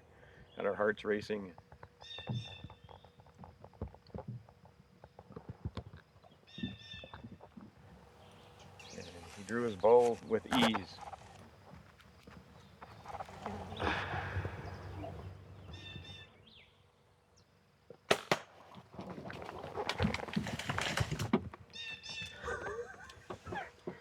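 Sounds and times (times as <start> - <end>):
bow shot snap: 18.1 - 18.8
animal crashing through brush: 18.1 - 21.5.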